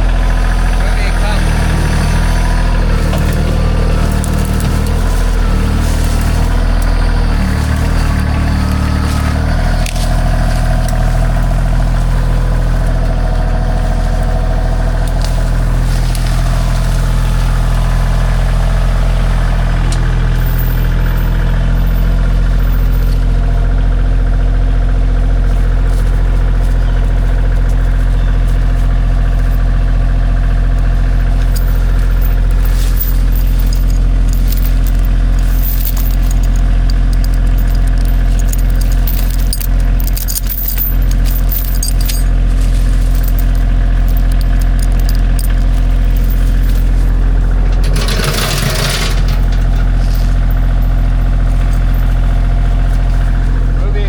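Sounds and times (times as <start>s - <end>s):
vehicle engine running: 0.0s - 54.0s
metallic clinks: 31.3s - 47.0s.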